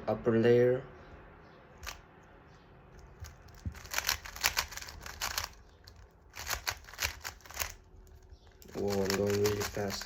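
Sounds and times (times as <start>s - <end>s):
puzzle cube clicking and rattling: 3.0s - 10.0s.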